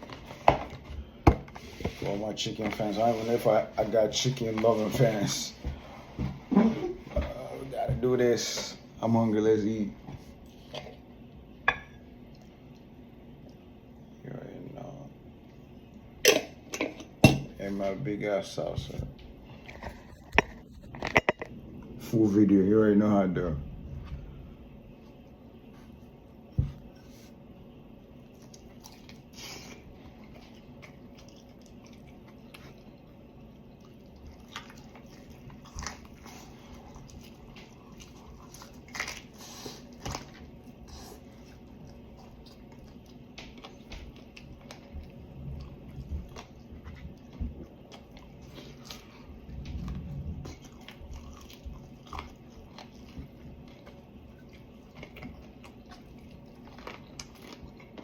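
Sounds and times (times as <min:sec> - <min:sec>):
chewing: 0:28.2 - 0:58.0
crispy chicken crunching: 0:50.5 - 0:58.0.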